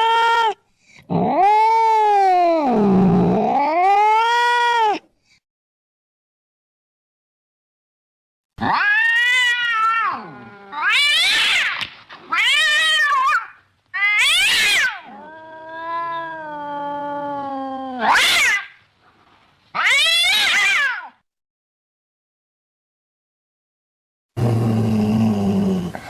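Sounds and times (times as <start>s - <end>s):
cat meowing and yowling: 0.0s - 5.0s, 8.6s - 18.8s, 19.8s - 21.2s.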